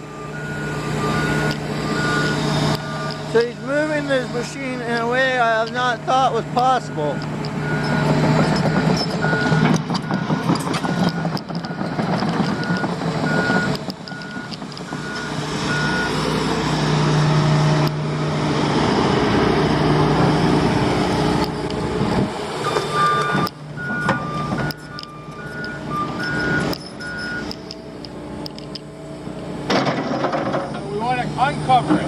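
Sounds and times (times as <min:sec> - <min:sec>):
lower-pitched alarm: 0:00.0 - 0:16.4, 0:22.6 - 0:28.0
excavator diesel engine: 0:00.0 - 0:32.0
backup alarm beeping: 0:00.1 - 0:04.8, 0:05.8 - 0:16.2, 0:22.6 - 0:27.9.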